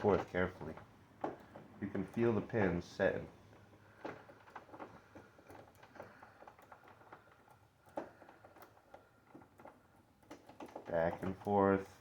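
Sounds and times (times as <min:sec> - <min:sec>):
lock pick clicking and scraping: 0:04.0 - 0:11.6.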